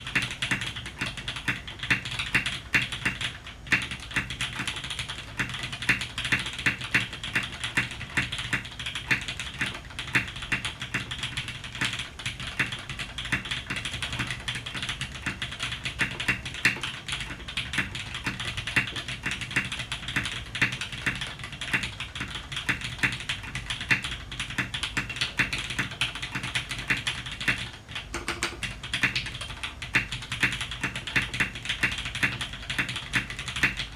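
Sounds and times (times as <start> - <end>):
mechanical keyboard typing: 0.0 - 33.9.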